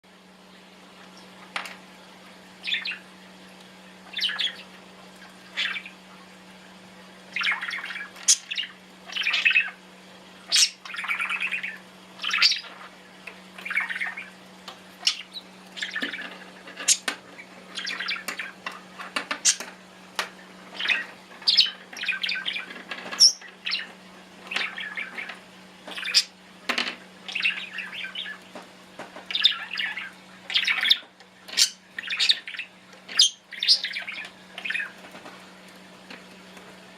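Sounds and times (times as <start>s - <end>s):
budgerigar chattering and chirping: 10.5s - 12.8s, 17.7s - 18.6s, 25.9s - 26.3s, 29.3s - 35.0s
budgerigar squawk: 10.5s - 12.8s.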